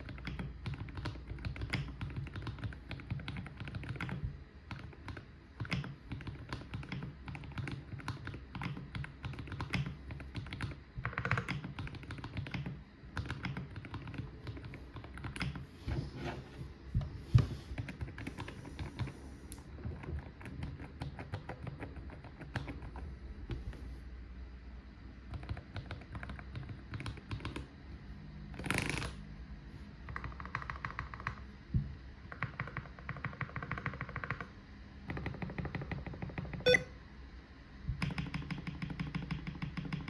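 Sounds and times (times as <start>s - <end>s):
mechanical keyboard typing: 0.0s - 15.6s, 19.9s - 23.6s, 25.3s - 27.7s, 30.1s - 31.4s, 32.3s - 34.5s, 35.1s - 36.8s, 38.0s - 40.0s.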